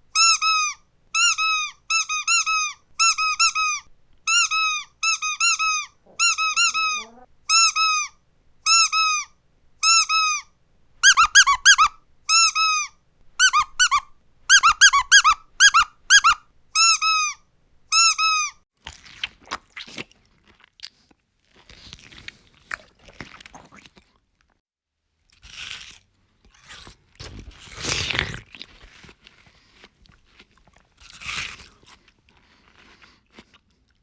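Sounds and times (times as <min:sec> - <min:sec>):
squeaky dog toy squeaks: 0:00.1 - 0:18.6.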